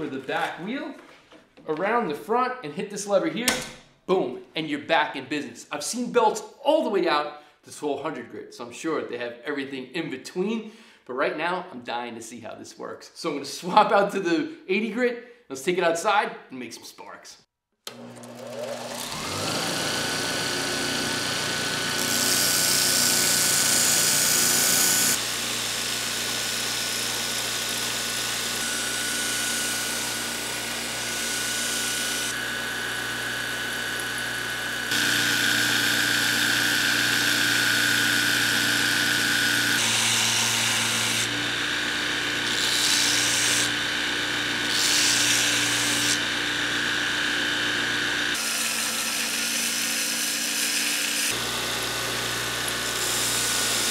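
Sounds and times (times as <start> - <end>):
grinder motor humming: 17.9 - 53.9.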